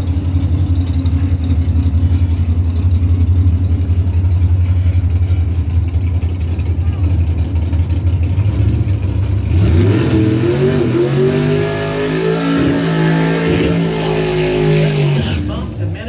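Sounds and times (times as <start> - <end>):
racing car engine revving: 8.2 - 16.0.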